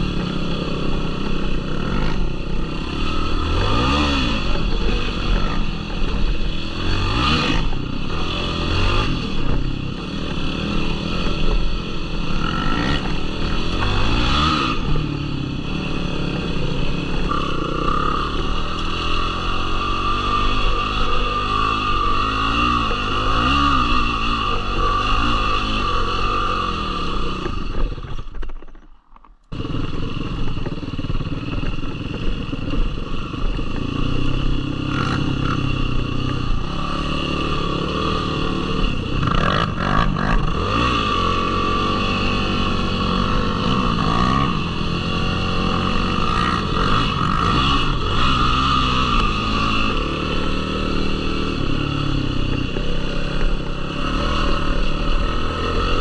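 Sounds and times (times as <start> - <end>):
atv engine revving: 0.0 - 28.5, 29.5 - 56.0.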